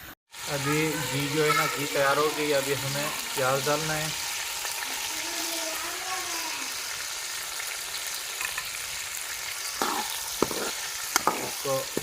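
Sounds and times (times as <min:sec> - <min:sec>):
onions sizzling in a pan: 0:00.3 - 0:12.0
utensil scraping a pan: 0:09.6 - 0:12.0.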